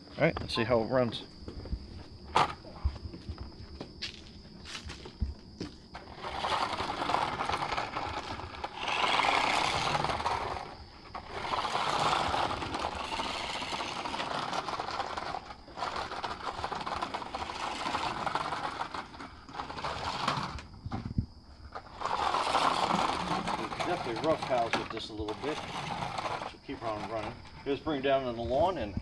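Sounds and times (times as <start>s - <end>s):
tires scraping over ground: 2.0s - 29.0s
toy truck motor whirring: 6.0s - 20.8s, 21.7s - 27.5s.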